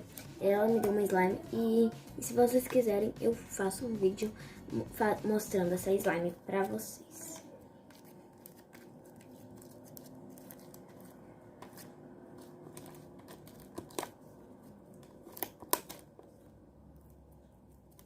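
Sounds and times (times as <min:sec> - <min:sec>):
sticky slime crackling: 0:04.2 - 0:18.0.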